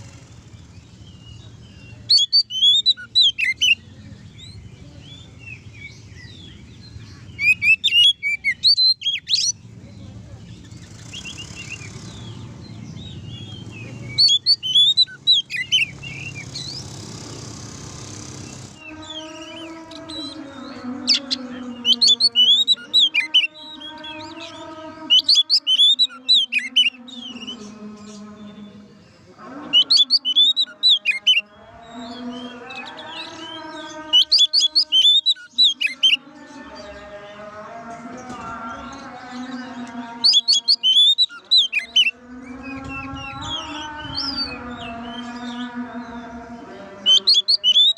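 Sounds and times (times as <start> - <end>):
magpie-robin singing: 0.0 - 47.9
bird singing whistled notes: 0.6 - 9.6, 10.5 - 16.9, 34.2 - 36.2, 40.2 - 45.6, 47.1 - 47.9.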